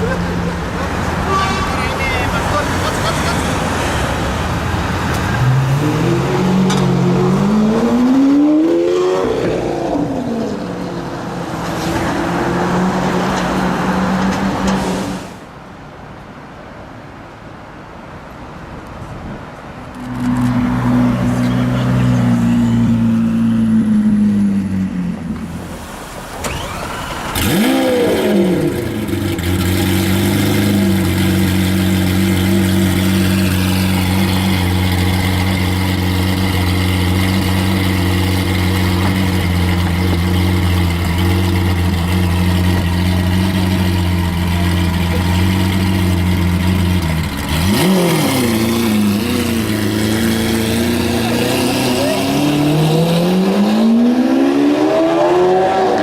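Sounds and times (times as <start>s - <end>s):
car engine revving: 5.3s - 15.2s, 26.4s - 56.0s.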